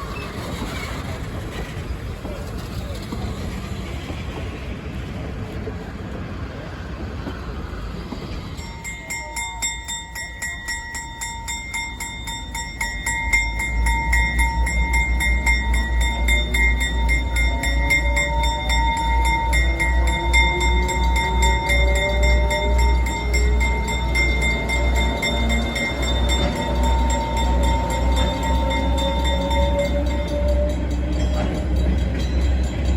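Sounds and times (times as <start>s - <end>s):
train rumbling past: 0.0s - 32.9s
fast steady ringing: 8.6s - 32.9s
heavy pulsing rumble: 8.6s - 32.9s.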